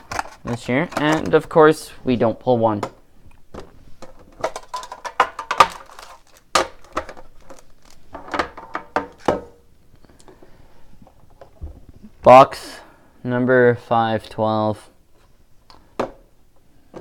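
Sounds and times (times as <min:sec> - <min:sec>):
packaging crinkling and rustling: 0:00.0 - 0:01.6, 0:04.0 - 0:09.3.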